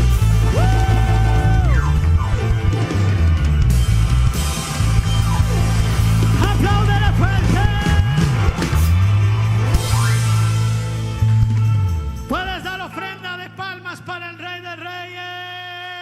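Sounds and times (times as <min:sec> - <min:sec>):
heavy bass line: 0:00.0 - 0:12.3.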